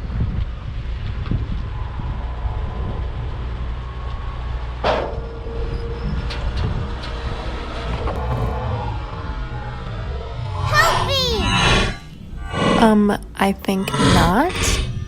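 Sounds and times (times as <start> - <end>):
steady tone: 9.1 - 15.0.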